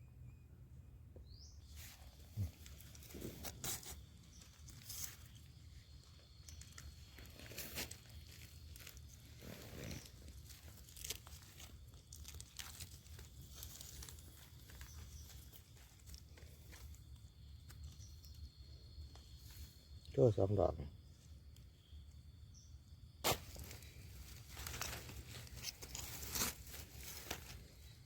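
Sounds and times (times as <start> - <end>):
rustling of dry leaves and twigs: 1.6 - 20.3, 23.2 - 28.0
twigs snapping: 10.0 - 16.8, 23.2 - 27.6.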